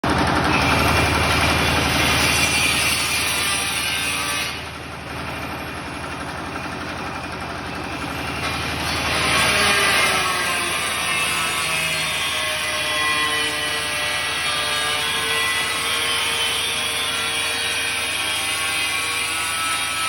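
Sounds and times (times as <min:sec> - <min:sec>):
generator engine running: 0:00.0 - 0:03.2, 0:04.1 - 0:10.4
electric tile cutter grinding: 0:00.1 - 0:20.0.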